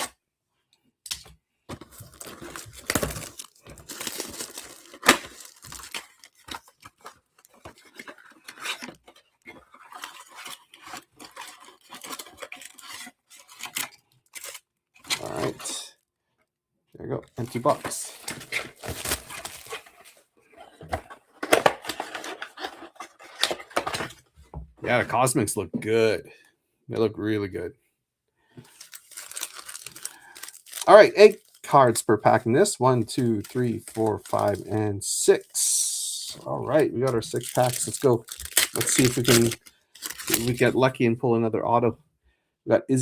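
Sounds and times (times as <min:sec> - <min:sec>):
packaging tearing and crinkling: 0:01.9 - 0:15.8, 0:17.4 - 0:20.2, 0:28.6 - 0:31.7, 0:33.2 - 0:34.8, 0:36.7 - 0:40.8.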